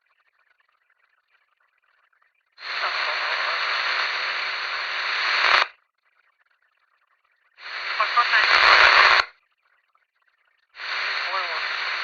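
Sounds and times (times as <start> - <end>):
police radio squelch: 2.6 - 5.7, 7.6 - 9.3, 10.8 - 12.0
static hiss: 2.6 - 5.7, 7.6 - 9.3, 10.8 - 12.0.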